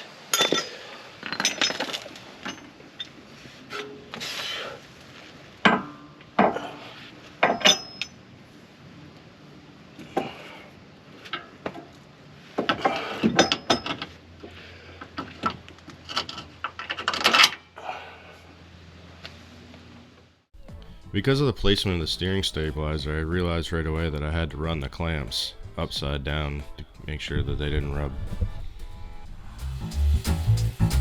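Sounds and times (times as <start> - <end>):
metal tools clinking and rattling: 0.3 - 4.1, 7.4 - 8.2, 12.7 - 14.2.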